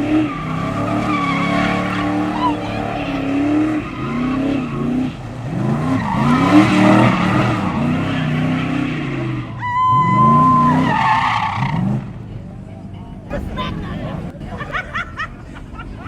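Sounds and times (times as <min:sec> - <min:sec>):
tyres squealing and skidding: 0:00.0 - 0:12.5
car engines revving hard: 0:00.0 - 0:16.0.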